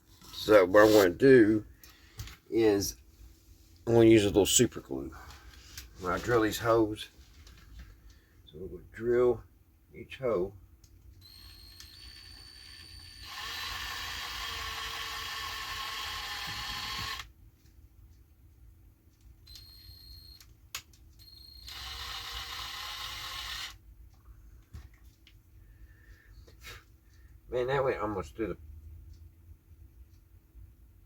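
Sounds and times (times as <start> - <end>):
electric drill boring: 11.2 - 17.3, 21.6 - 23.8.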